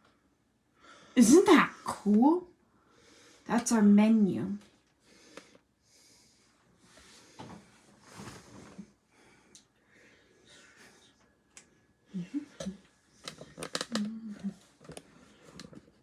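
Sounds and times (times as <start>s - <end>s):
breathing: 0.8s - 1.2s, 2.7s - 3.5s, 5.0s - 7.8s, 9.1s - 11.9s.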